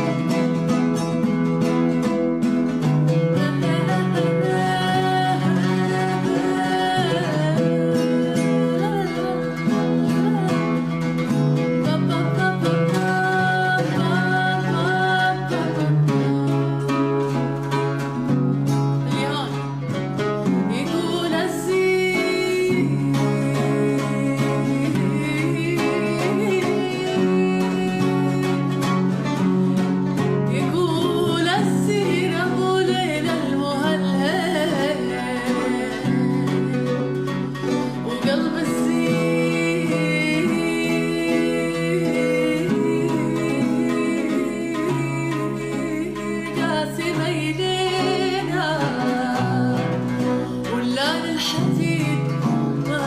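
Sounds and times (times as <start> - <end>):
sustained instrumental accompaniment: 0.0 - 53.0
person singing sad song: 3.4 - 10.9, 20.7 - 29.2, 30.5 - 53.0.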